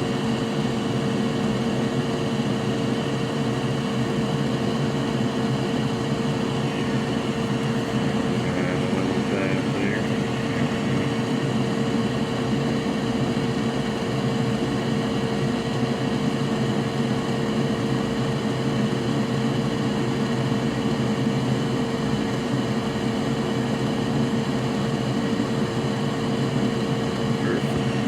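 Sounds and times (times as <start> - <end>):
electric fan whirring: 3.0 - 14.6.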